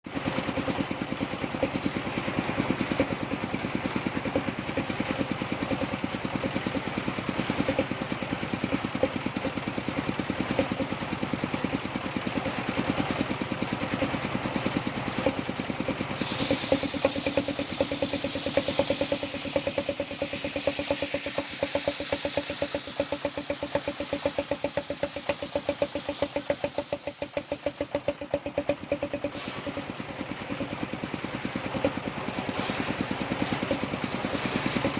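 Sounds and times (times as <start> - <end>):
sawmill engine pulsing: 0.0 - 34.9
high hiss: 16.1 - 27.5.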